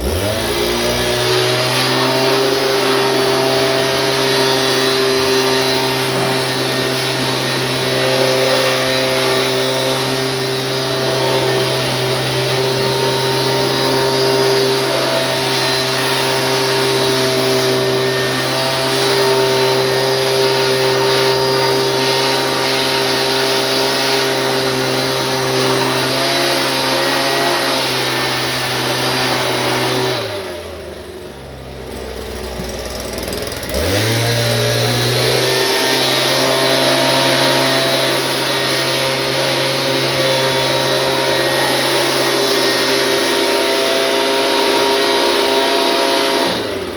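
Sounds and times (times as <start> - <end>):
small gasoline engine running: 0.0 - 46.9.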